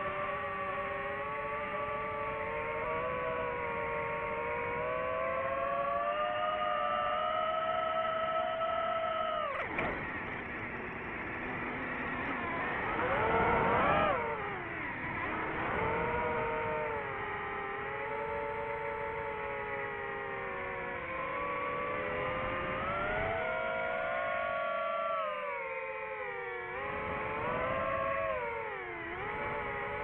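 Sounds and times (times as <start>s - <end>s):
drone propellers whining: 0.0s - 30.0s.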